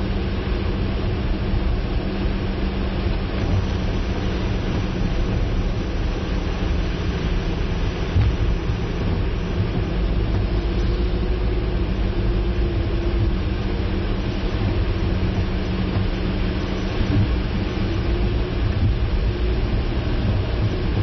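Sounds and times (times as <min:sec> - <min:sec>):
car engine hum: 0:00.0 - 0:21.0
road and wind noise: 0:00.0 - 0:21.0.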